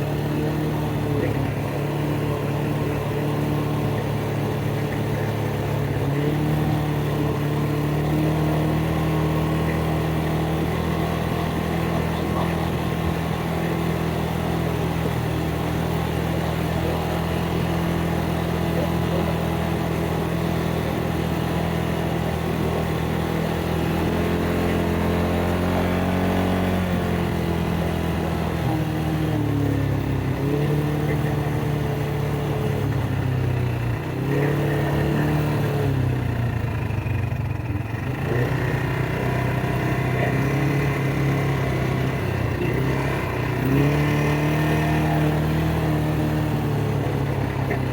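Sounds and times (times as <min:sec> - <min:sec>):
atv engine revving: 0:00.0 - 0:47.9.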